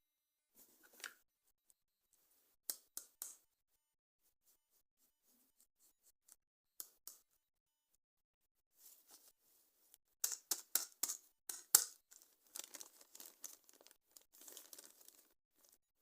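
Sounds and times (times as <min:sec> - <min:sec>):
wrapping rustling: 0:12.1 - 0:15.8
packaging ripping: 0:12.2 - 0:15.3.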